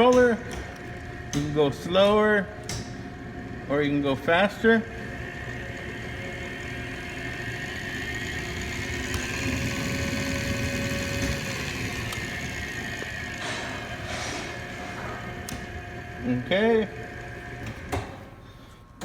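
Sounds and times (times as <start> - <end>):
lathe spindle whirring and whining: 0.7 - 17.9.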